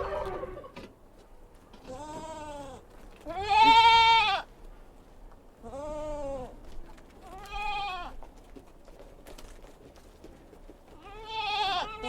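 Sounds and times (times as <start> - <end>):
livestock bleating: 1.9 - 4.5, 7.3 - 8.2, 11.0 - 12.0.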